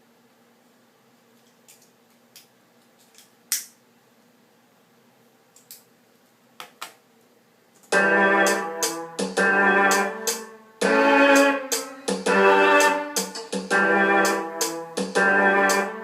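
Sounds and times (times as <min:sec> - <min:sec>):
electronic keyboard chords: 0:07.9 - 0:16.0.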